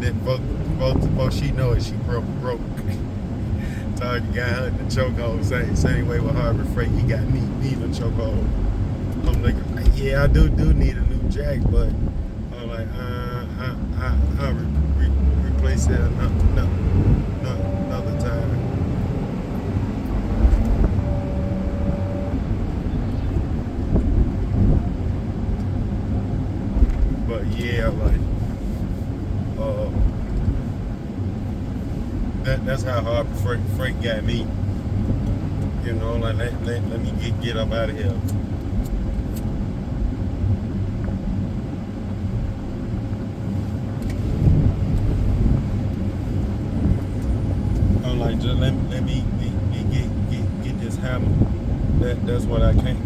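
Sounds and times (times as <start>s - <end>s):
car cabin road and engine rumble: 0.0s - 53.0s.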